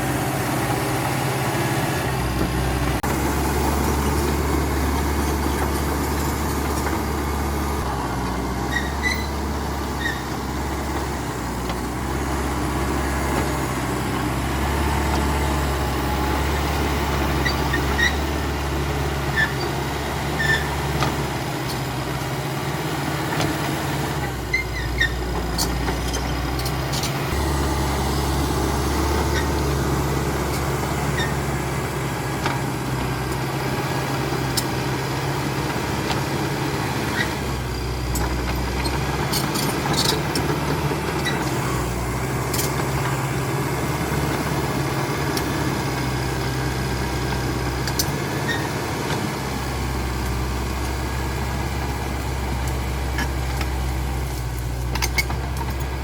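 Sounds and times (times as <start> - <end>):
bulldozer diesel engine: 0.0 - 56.0
short high squeaks: 8.7 - 10.3, 17.4 - 18.4, 20.4 - 20.8, 24.5 - 27.6, 31.0 - 31.4.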